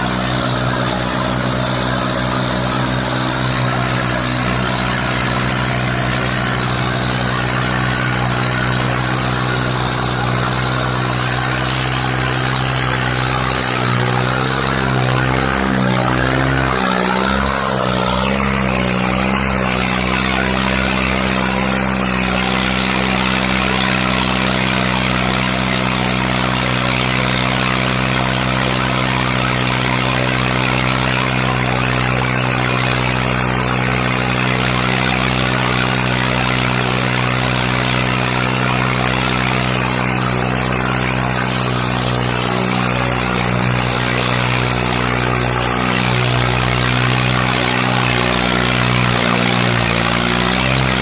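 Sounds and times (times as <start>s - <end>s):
tractor diesel engine under load: 0.0s - 51.0s.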